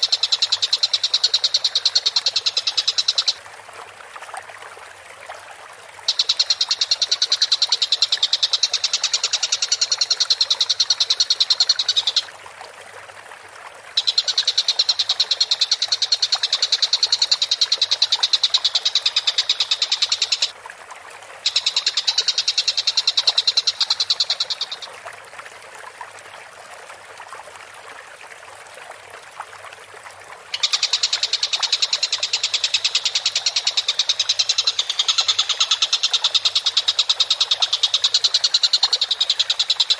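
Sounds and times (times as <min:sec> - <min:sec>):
kingfisher rattling call: 0:00.0 - 0:03.4, 0:06.1 - 0:12.3, 0:14.0 - 0:20.5, 0:21.4 - 0:24.9, 0:30.5 - 0:39.9.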